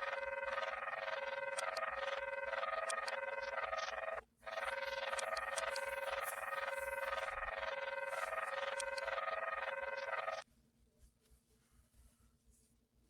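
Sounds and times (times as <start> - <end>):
high electronic beeps: 0.0 - 10.4
steady alarm tone: 0.0 - 10.4.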